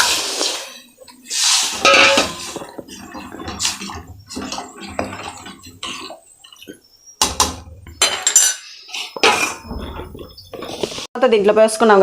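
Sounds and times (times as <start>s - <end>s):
liquid pouring and splashing: 0.0s - 6.6s
metal vessels knocking: 1.0s - 10.8s.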